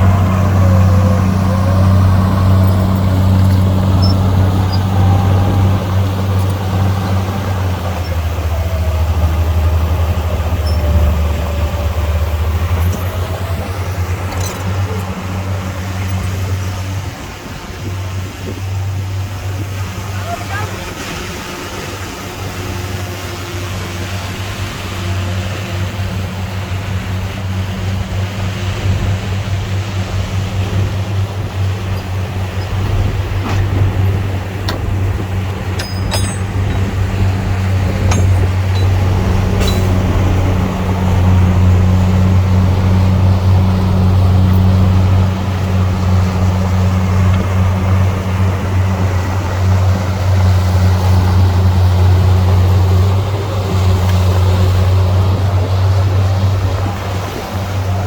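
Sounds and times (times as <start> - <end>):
heavy diesel engine droning: 0.0 - 58.0
light metallic clinks: 0.4 - 7.3, 10.5 - 17.0, 31.5 - 42.2.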